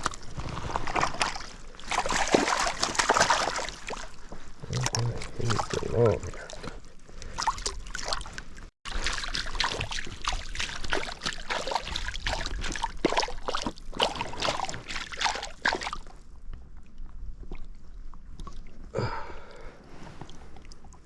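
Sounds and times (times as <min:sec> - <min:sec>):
fish splashing in water: 0:00.0 - 0:05.8, 0:07.3 - 0:16.1.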